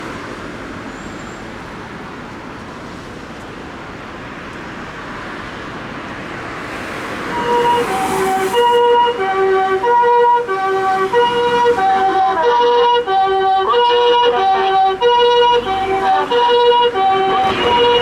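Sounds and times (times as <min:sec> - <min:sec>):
road traffic noise: 0:00.0 - 0:18.0
ambulance two-tone siren: 0:07.0 - 0:18.0.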